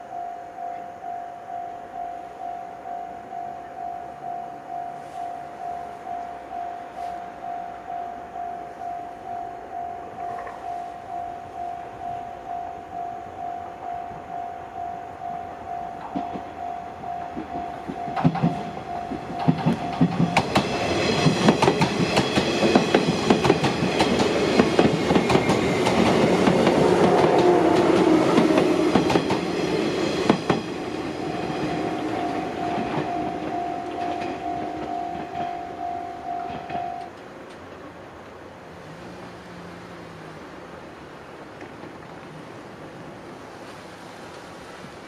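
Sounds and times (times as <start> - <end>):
level crossing alarm ringing: 0.0 - 26.6, 28.2 - 37.1
train wheels clicking over rail joints: 15.9 - 37.8.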